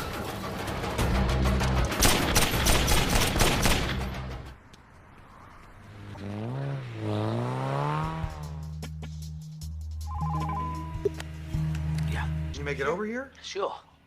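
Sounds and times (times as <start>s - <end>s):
rapid gunfire: 2.0s - 4.1s
low music bed: 8.1s - 13.4s
wavering pitched tone: 10.1s - 11.2s.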